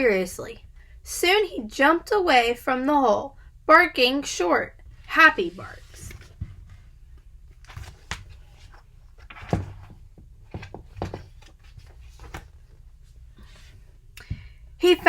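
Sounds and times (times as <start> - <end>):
low steady hum: 0.0 - 15.0
book rustling: 5.4 - 13.8.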